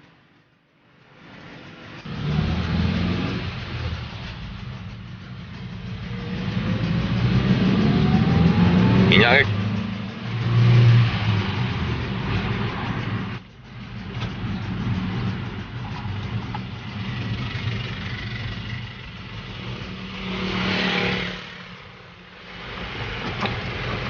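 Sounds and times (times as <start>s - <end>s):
rushing noise: 1.0s - 24.0s
motor engine humming: 1.2s - 20.3s.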